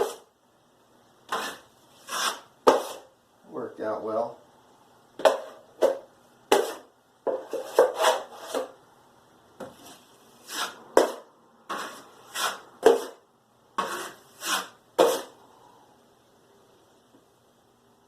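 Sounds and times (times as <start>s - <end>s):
drywall tool rasping strokes: 0.0s - 0.3s, 1.3s - 3.1s, 6.5s - 8.8s, 9.8s - 13.2s, 13.8s - 15.4s.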